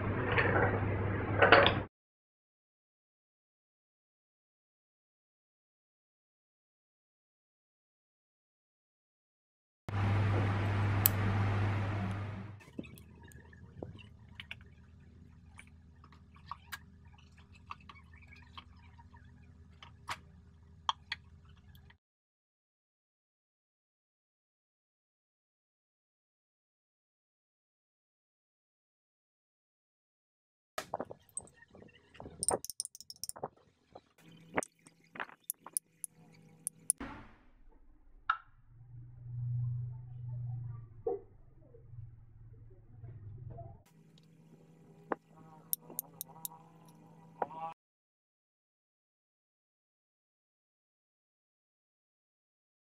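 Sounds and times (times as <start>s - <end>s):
light clicks and taps: 32.4s - 33.3s, 36.7s - 37.0s, 45.8s - 46.5s
light metallic clinks: 32.4s - 33.3s, 36.7s - 37.0s, 45.8s - 46.6s.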